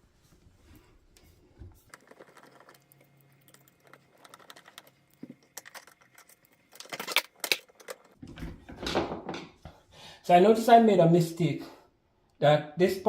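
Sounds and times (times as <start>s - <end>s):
sharp knocks clattering: 8.2s - 9.6s.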